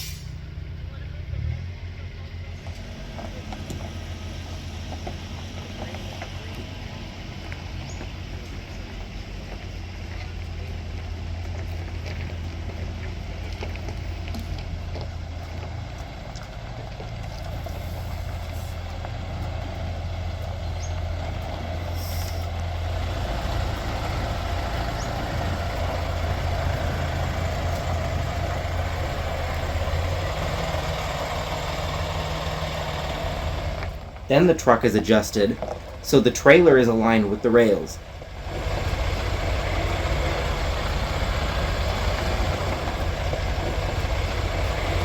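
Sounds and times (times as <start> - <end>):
brief air hiss: 0.0 - 0.4, 22.0 - 22.5
diesel truck engine running: 0.0 - 45.0.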